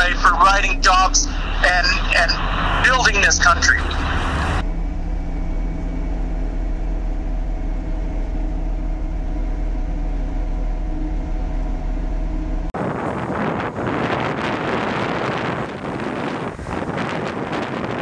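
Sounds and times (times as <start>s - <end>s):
truck engine idling: 0.0s - 18.0s
wind buffeting microphone: 12.8s - 18.0s.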